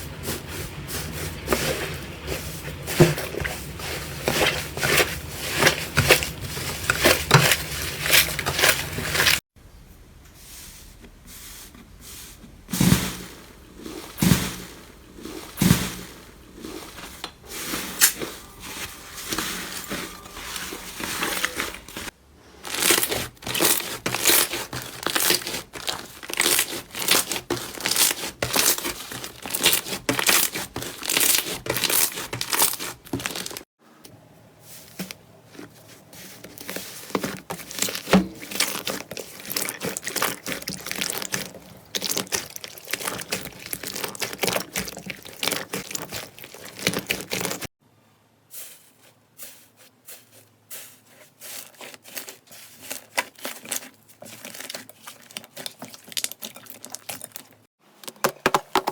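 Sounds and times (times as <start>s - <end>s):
slime crackling and popping: 22.7s - 33.6s, 37.1s - 47.6s.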